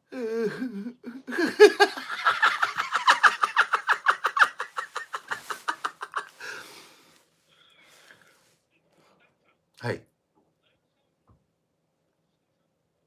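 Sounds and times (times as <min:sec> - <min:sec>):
person laughing: 0:00.4 - 0:06.8.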